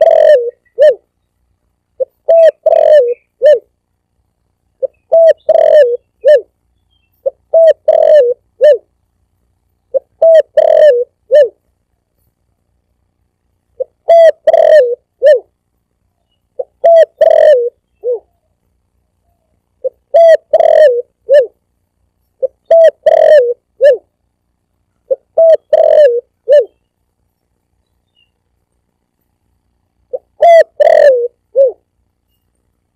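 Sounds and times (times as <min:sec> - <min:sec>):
dove cooing: 0:00.0 - 0:01.1, 0:02.0 - 0:03.7, 0:04.8 - 0:06.5, 0:07.2 - 0:08.9, 0:09.9 - 0:11.6, 0:13.8 - 0:15.5, 0:16.6 - 0:18.5, 0:19.4 - 0:21.6, 0:22.4 - 0:24.1, 0:25.1 - 0:26.8, 0:30.1 - 0:31.9.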